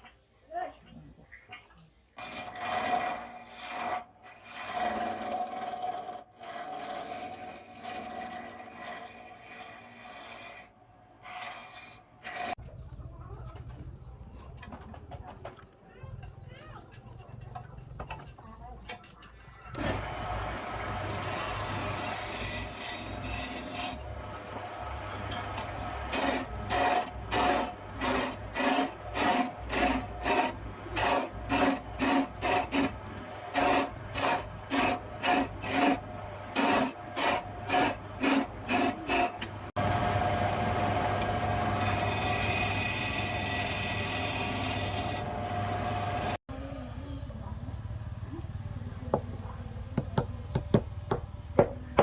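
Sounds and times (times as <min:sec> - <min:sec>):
file scraping knife blade: 0:02.2 - 0:12.6, 0:21.1 - 0:24.1, 0:25.2 - 0:39.5, 0:41.2 - 0:46.4
electric machine whirring: 0:19.7 - 0:46.4.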